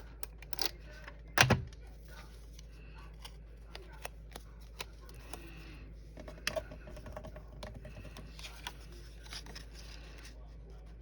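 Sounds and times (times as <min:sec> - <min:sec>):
paper and tape rustling: 0:06.9 - 0:10.8.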